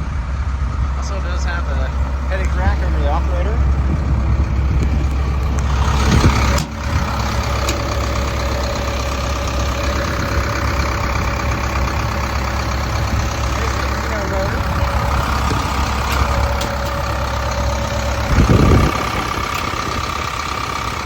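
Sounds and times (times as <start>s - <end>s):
excavator diesel engine idling: 0.0s - 21.0s.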